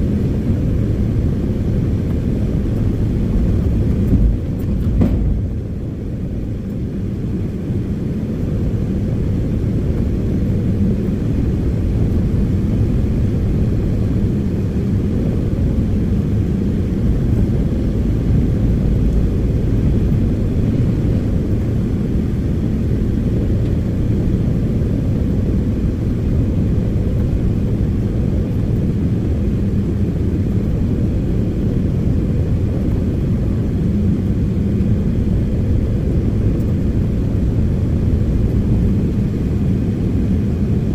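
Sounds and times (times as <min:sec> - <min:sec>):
diesel machinery engine rumble: 0:01.6 - 0:07.2.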